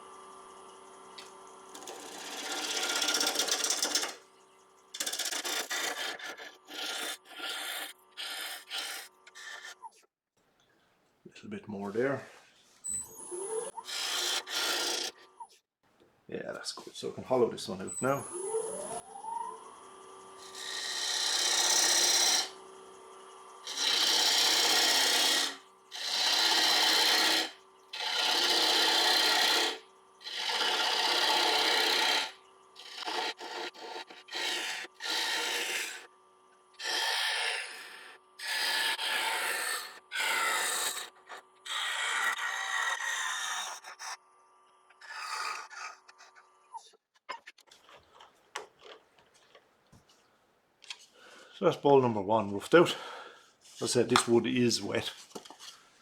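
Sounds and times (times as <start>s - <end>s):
lathe whine and hum: 0.0s - 5.2s, 17.8s - 39.6s
turning tool cutting wood: 0.0s - 10.1s, 12.8s - 15.6s, 17.2s - 49.6s, 51.9s - 55.7s.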